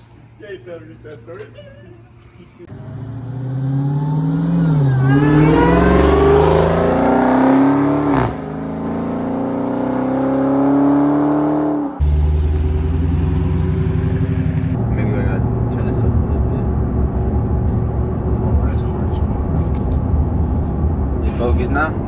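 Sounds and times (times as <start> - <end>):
supercharger whine: 2.7 - 8.4, 11.8 - 22.0
car engine at full throttle: 2.7 - 22.0
engine low rumble: 11.9 - 22.0.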